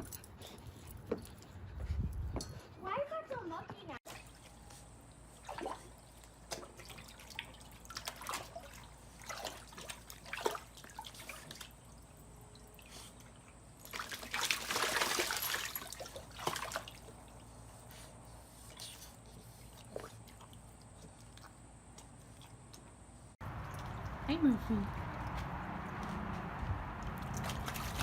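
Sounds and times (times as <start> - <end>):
water splashing and dripping: 4.0 - 17.5, 23.4 - 26.1, 26.9 - 28.0.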